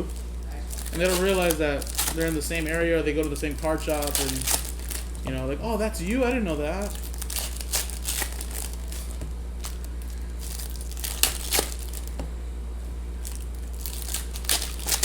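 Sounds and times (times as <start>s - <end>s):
foil wrappers crinkling and tearing: 0.0s - 12.2s, 13.2s - 15.0s
steady low hum: 0.0s - 15.0s.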